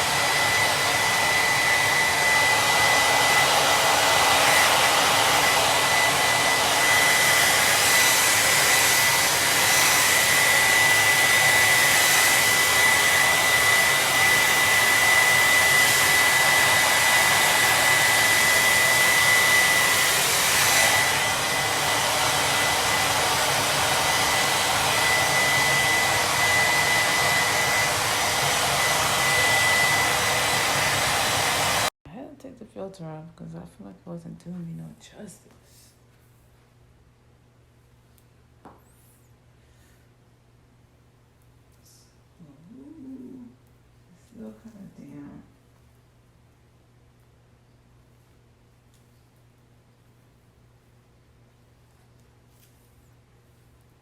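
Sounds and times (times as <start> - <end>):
blow dryer running: 0.0 - 31.9, 44.2 - 45.4.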